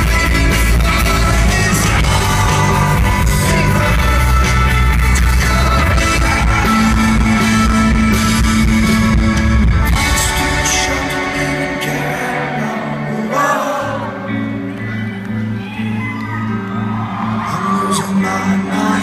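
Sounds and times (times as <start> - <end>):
drums: 0.0 - 12.2
man singing: 0.0 - 14.4, 17.5 - 19.0
bass guitar: 0.0 - 19.0
guitars: 0.0 - 19.0.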